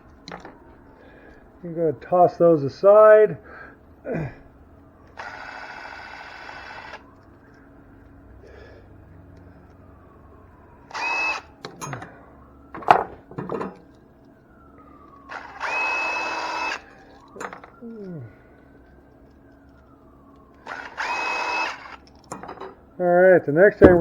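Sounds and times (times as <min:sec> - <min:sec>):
cordless drill whirring: 0:05.2 - 0:07.1, 0:10.9 - 0:11.6, 0:15.3 - 0:17.7, 0:20.6 - 0:22.1
metal parts clicking: 0:11.6 - 0:12.2.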